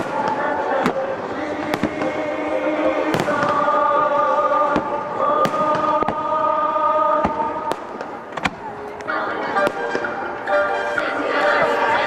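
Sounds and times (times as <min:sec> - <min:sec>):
fireworks bangs: 0:00.0 - 0:08.6
music with sustained notes: 0:00.0 - 0:12.0.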